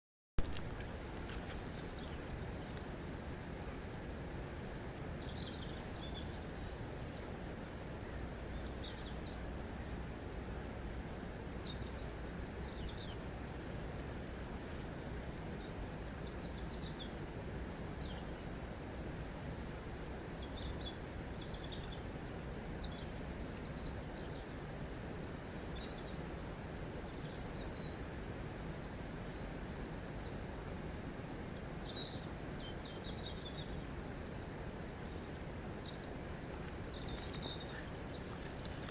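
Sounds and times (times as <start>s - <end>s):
birds chirping: 34.4s - 38.9s.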